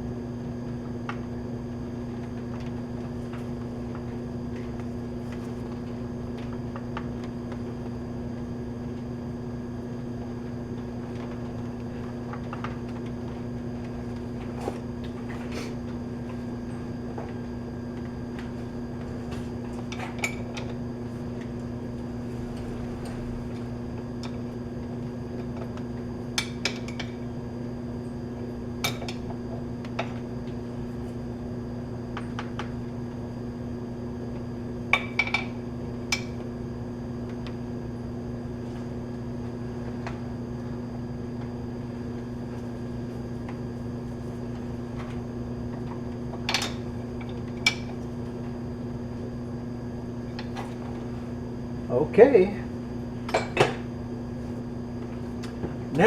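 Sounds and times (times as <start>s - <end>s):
steady electrical hum: 0.0s - 56.0s.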